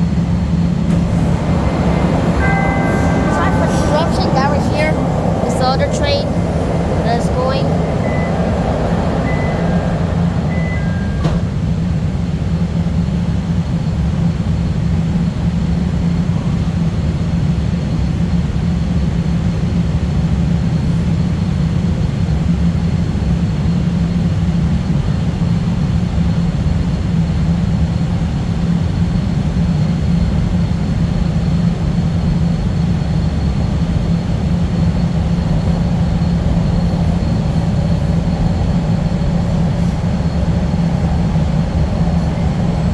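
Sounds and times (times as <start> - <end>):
subway train rumble: 0.0 - 42.9
faint high whine: 0.8 - 11.8.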